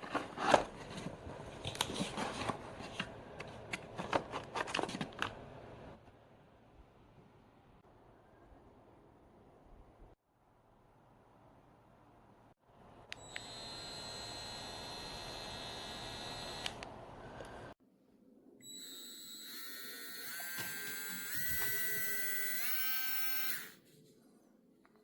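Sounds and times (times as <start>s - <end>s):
rotary tool motor whining: 13.2s - 16.8s, 18.6s - 23.8s.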